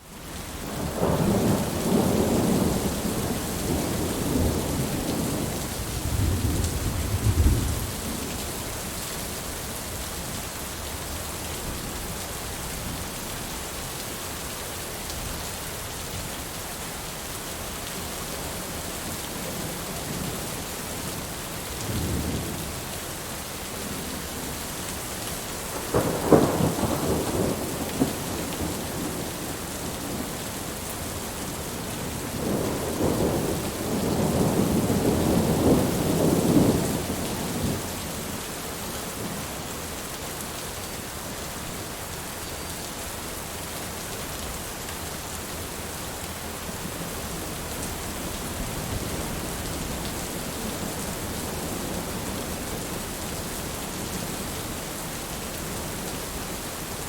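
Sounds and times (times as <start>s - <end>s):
steady rain falling: 0.0s - 57.0s
thunder rumbling: 0.7s - 8.3s, 25.7s - 30.3s, 32.1s - 37.8s.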